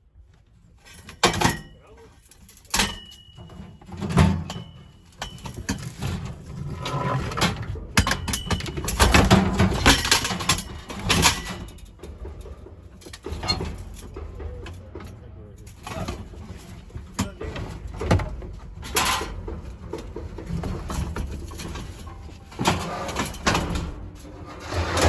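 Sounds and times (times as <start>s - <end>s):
scrap metal clanking and scraping: 0.8s - 25.0s.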